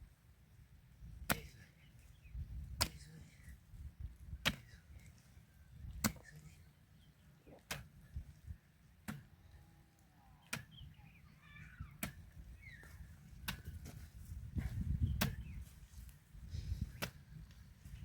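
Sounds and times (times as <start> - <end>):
low wind rumble: 2.1 - 2.8, 3.4 - 6.0, 10.9 - 18.0.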